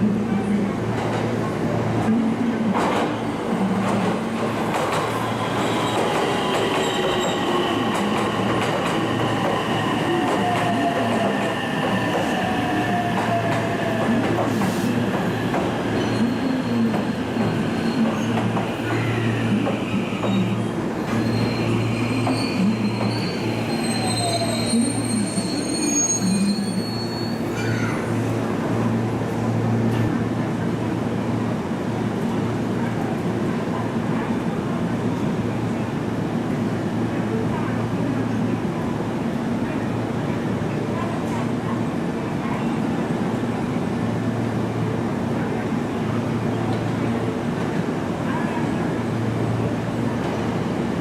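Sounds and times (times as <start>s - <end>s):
train wheels squealing: 21.1s - 28.0s.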